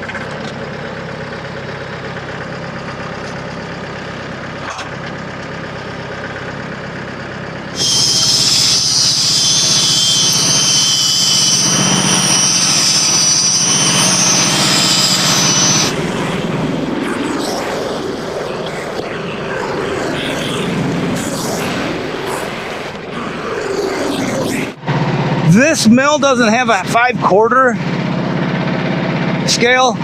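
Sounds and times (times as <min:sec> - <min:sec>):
small gas engine running: 0:00.0 - 0:30.0
saw blade whining through log: 0:07.7 - 0:24.8.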